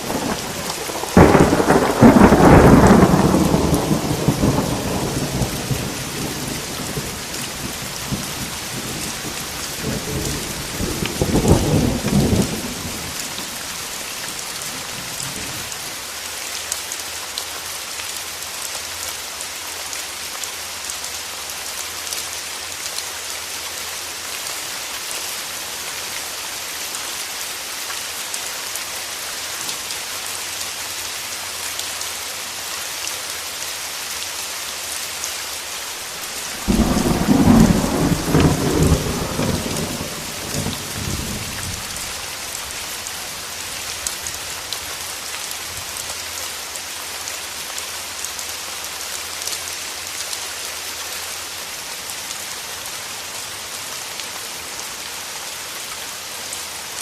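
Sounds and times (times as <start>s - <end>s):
rolling thunder: 0.0s - 13.9s, 36.4s - 42.2s
heavy rain: 0.0s - 57.0s.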